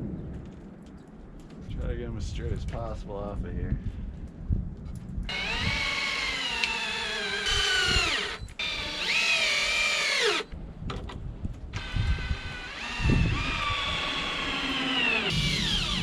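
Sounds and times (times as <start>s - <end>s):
cordless drill whining: 5.3s - 10.5s, 11.8s - 16.0s.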